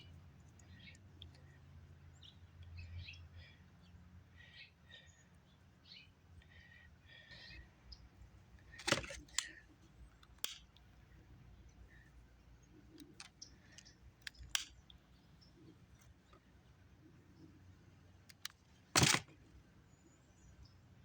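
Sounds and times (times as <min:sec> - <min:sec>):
tools clicking and knocking: 0:08.7 - 0:09.6, 0:18.3 - 0:19.3.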